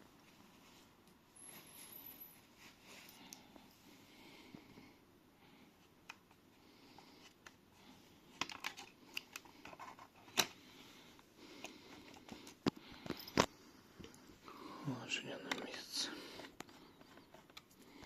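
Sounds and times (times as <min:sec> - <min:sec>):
clicks and taps of laptop parts: 0:08.4 - 0:10.5.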